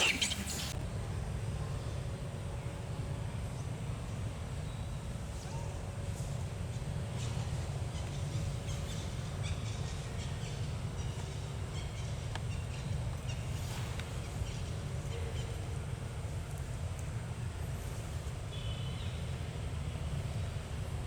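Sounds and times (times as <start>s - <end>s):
small animals chirping and clicking: 0.0s - 0.8s.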